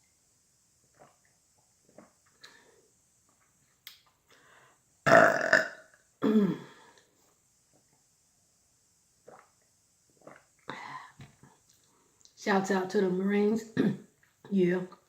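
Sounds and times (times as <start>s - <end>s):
woman burping loudly: 5.1s - 6.8s.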